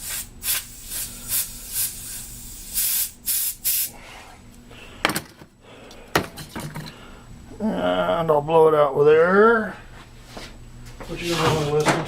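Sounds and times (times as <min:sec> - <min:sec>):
compressed air hissing blasts: 0:00.0 - 0:04.2.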